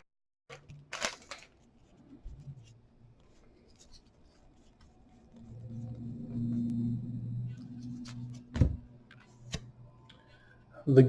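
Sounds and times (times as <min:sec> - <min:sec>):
trading cards rustling: 0:00.5 - 0:02.0.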